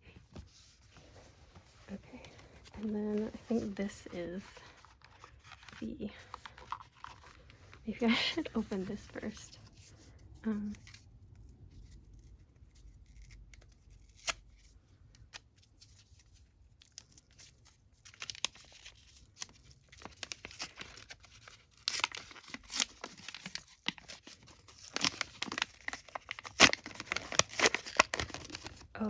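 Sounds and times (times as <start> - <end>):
packet tearing and rustling: 2.8 - 7.5, 16.8 - 29.0.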